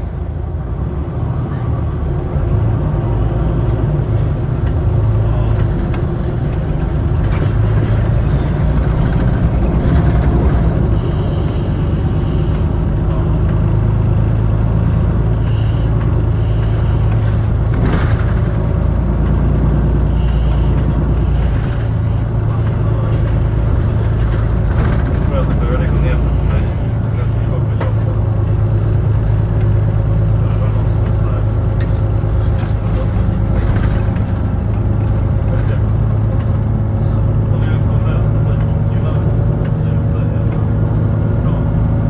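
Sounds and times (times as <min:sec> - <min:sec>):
bus engine and road rumble: 0:00.0 - 0:42.0
rattles and knocks: 0:05.5 - 0:11.2, 0:16.0 - 0:19.7, 0:20.3 - 0:36.9.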